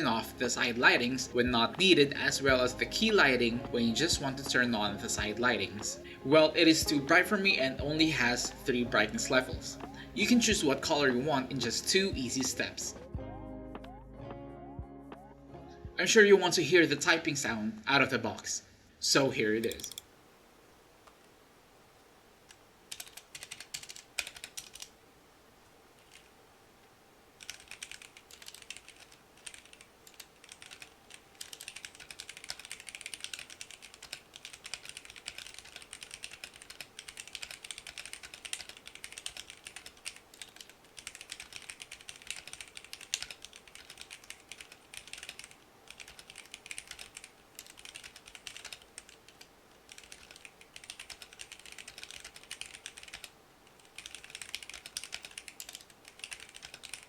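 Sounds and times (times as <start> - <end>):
mechanical keyboard typing: 19.6 - 20.1, 22.5 - 24.9, 26.0 - 26.3, 27.4 - 57.0.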